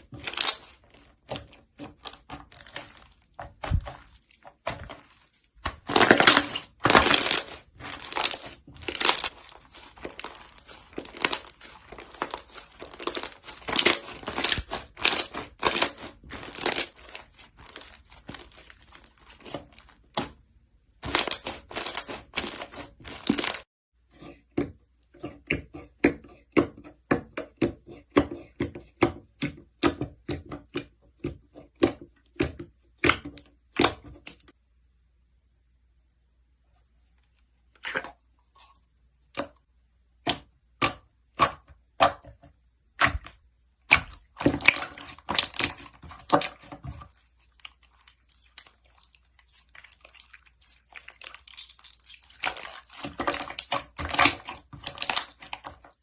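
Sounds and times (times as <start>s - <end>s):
slime squeezed crackling and popping: 0.2s - 0.8s, 5.7s - 20.1s, 43.9s - 46.7s, 47.5s - 55.7s.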